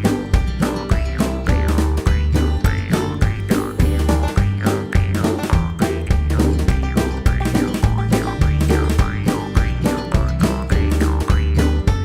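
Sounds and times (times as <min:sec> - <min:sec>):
upbeat instrumental music: 0:00.0 - 0:12.0.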